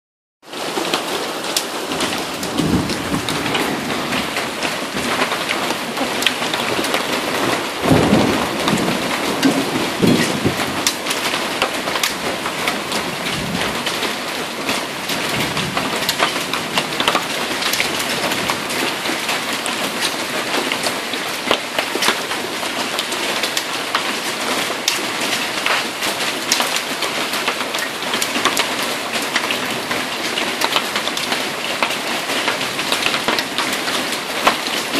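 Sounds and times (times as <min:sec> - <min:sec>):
heavy rain: 0:00.4 - 0:34.9
thunder rumbling: 0:00.5 - 0:18.9
hailstones ticking: 0:00.5 - 0:34.9.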